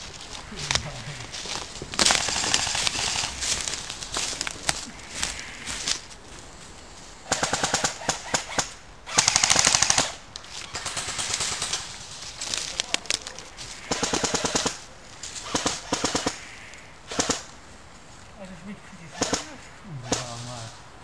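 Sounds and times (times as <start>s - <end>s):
airsoft guns firing: 2.0s - 3.3s, 7.3s - 11.9s, 13.8s - 14.8s, 15.4s - 16.4s, 17.1s - 17.5s, 19.2s - 19.5s.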